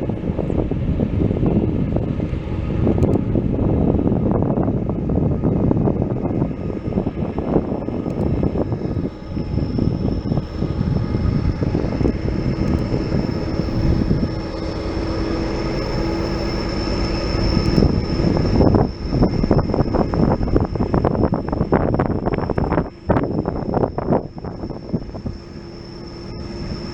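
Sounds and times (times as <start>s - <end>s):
train wheels rumbling on rail: 0.0s - 25.5s
wind buffeting microphone: 0.0s - 26.9s.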